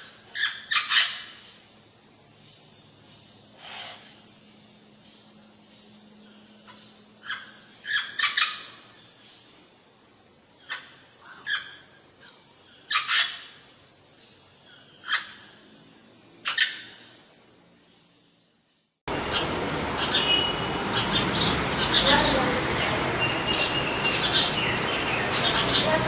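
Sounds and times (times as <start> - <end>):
bird chirps: 19.1 - 26.0.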